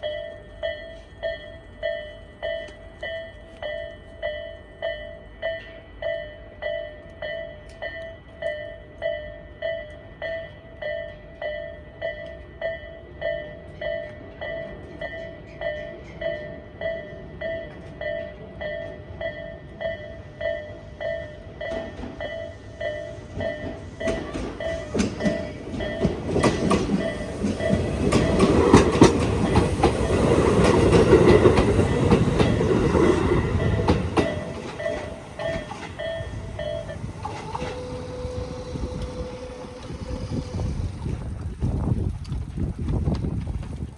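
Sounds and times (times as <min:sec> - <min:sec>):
electric train passing: 0:00.0 - 0:43.9
wheels clacking over rail joints: 0:23.4 - 0:43.9
level crossing alarm ding: 0:33.7 - 0:40.4.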